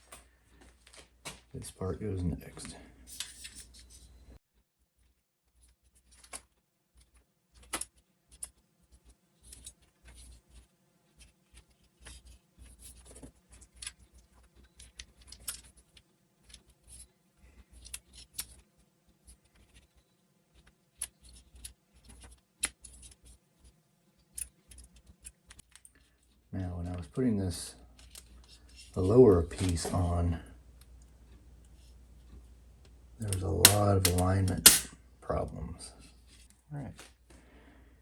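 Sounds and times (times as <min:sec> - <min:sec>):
small metal parts clicking: 0:33.2 - 0:34.9.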